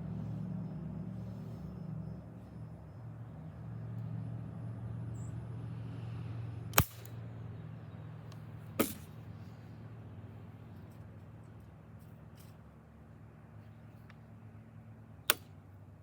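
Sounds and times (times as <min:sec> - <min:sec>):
steady low hum: 0:00.0 - 0:16.0
bb gun shots: 0:06.8 - 0:07.1, 0:08.8 - 0:09.1.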